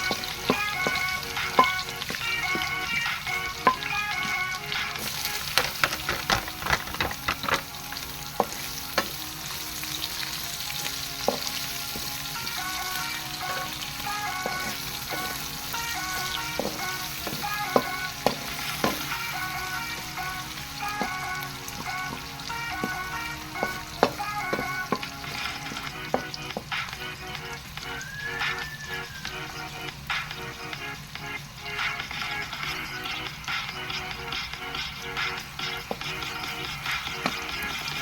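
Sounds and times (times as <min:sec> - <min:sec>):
utensil scraping and knocking pan: 0:00.0 - 0:04.4, 0:05.0 - 0:07.7
food sizzling in a frying pan: 0:00.0 - 0:38.0.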